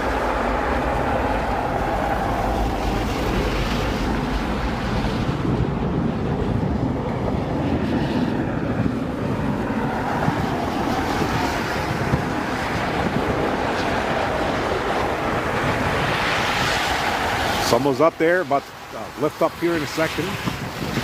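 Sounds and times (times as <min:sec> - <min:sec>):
jet engines at takeoff power: 0:00.0 - 0:21.0
wind on microphone: 0:00.0 - 0:21.0.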